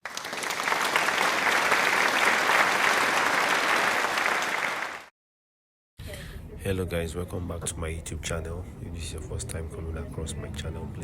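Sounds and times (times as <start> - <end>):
crowd applauding: 0.0 - 5.1.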